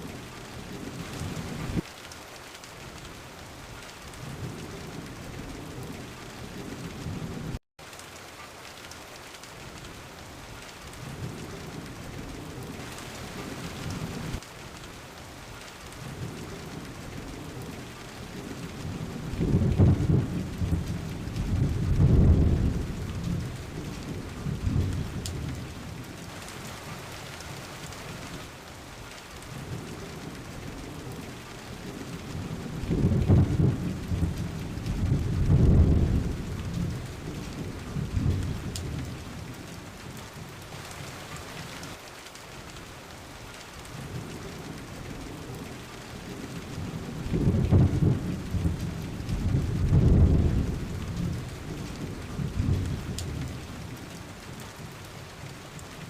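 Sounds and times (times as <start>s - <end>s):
steady rain falling: 0.0s - 56.0s
thunder rumbling: 16.0s - 28.4s, 29.5s - 39.8s, 43.9s - 54.1s.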